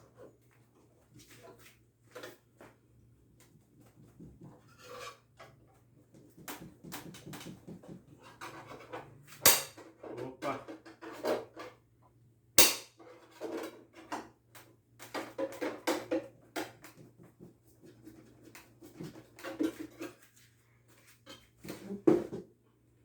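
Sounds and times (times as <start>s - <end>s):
sharp knock: 12.6s - 12.9s.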